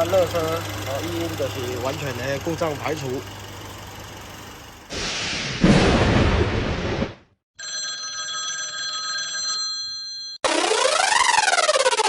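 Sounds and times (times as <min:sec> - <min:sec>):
loud burst of noise: 0:04.9 - 0:07.2
electronic ringing tone: 0:07.6 - 0:12.0.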